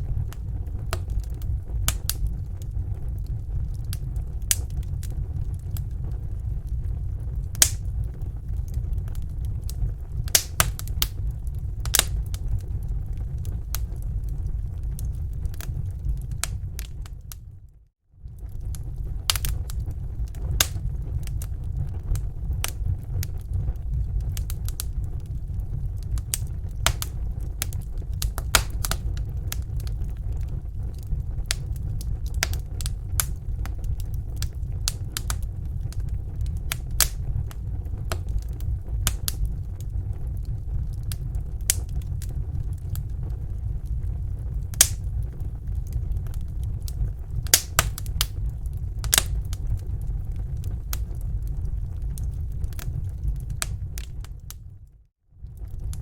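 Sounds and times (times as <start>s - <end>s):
campfire crackling and popping: 0.0s - 17.6s, 18.2s - 54.7s, 55.4s - 56.0s
low rumble: 0.0s - 56.0s.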